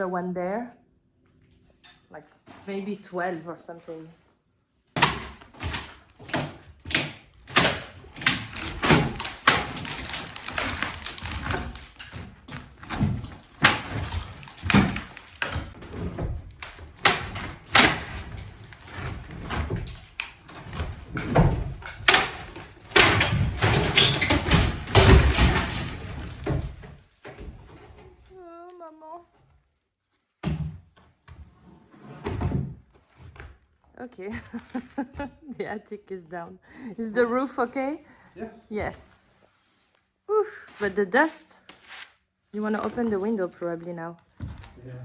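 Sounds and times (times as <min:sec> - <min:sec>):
boards banging and clattering: 0:05.0 - 0:28.2
heavy crashing debris: 0:08.1 - 0:26.8.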